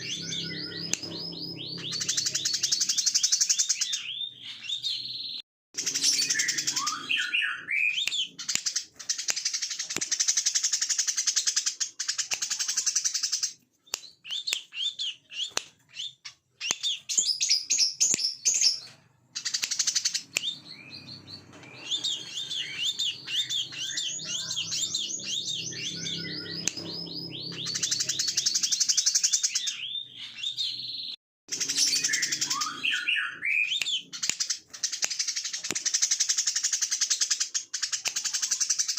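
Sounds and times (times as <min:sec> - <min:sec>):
bird singing with buzzing trills: 0:00.0 - 0:05.1, 0:05.8 - 0:08.2, 0:19.7 - 0:34.1.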